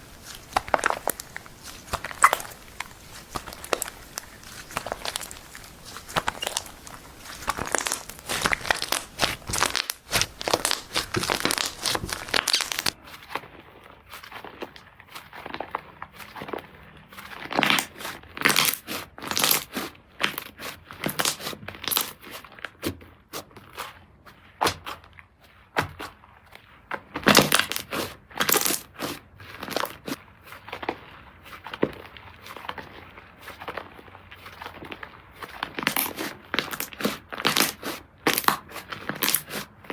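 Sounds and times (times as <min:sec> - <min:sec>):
slime crackling and popping: 0:00.0 - 0:13.0, 0:35.7 - 0:39.6
slime squishing: 0:00.0 - 0:13.0, 0:32.4 - 0:39.9.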